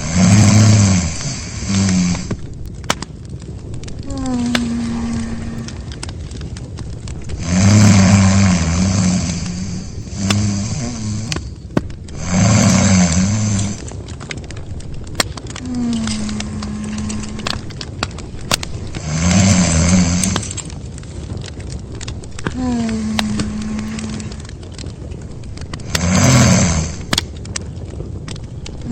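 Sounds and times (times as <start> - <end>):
person snoring: 0.0 - 2.3, 4.0 - 5.8, 7.4 - 11.4, 12.2 - 13.8, 15.6 - 17.6, 19.0 - 20.4, 22.5 - 24.4, 25.9 - 27.0.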